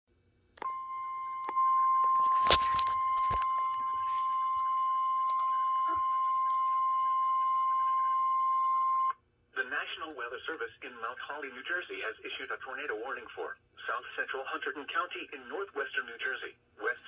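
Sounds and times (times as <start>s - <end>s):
steady high alarm beep: 0.6s - 9.1s.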